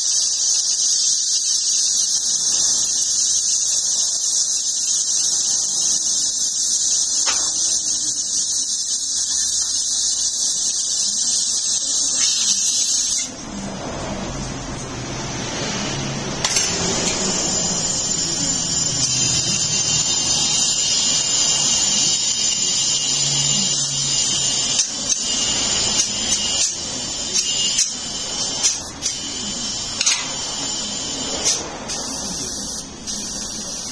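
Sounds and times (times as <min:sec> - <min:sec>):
power tool whining: 0:16.4 - 0:32.8.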